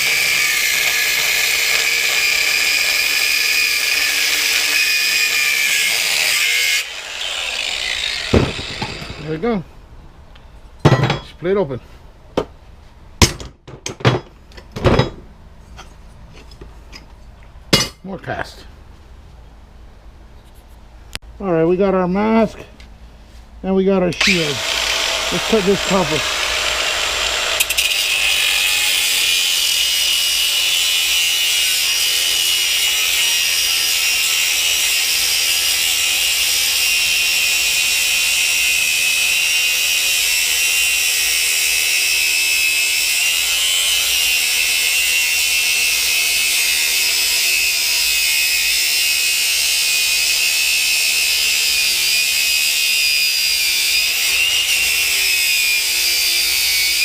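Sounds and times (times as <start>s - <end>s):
cutting wheel whining: 0.0s - 9.4s, 24.2s - 31.1s.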